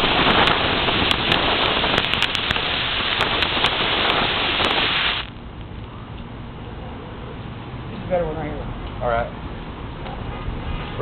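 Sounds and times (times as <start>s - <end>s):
firework hissing and crackling: 0.0s - 5.4s.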